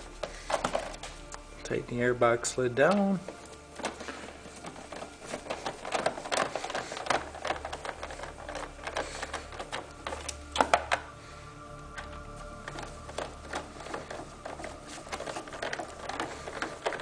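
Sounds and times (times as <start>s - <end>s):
hand tool clicking: 2.9s - 11.2s, 11.8s - 17.0s.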